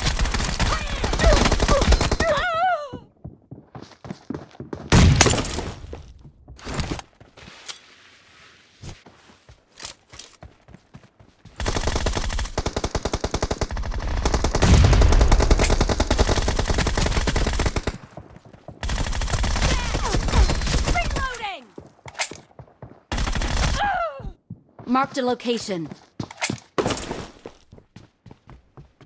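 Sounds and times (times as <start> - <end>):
rapid automatic gunfire: 0.0 - 2.2, 11.6 - 18.0, 18.8 - 21.4, 23.1 - 23.8
video game gunshots and impacts: 4.9 - 6.0.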